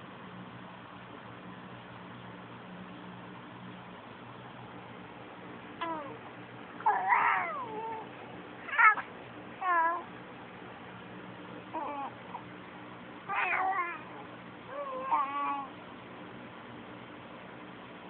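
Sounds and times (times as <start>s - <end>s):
baby cooing: 5.8s - 6.2s, 6.8s - 8.1s, 11.7s - 12.5s, 13.3s - 15.7s.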